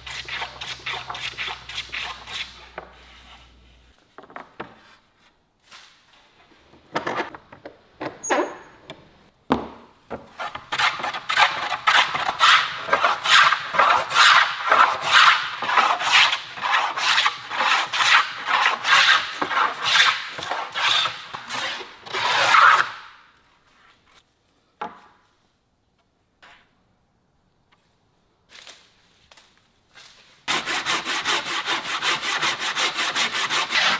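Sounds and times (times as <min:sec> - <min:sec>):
hand tool scraping wood: 0:00.0 - 0:03.9, 0:10.3 - 0:23.0, 0:30.5 - 0:33.9.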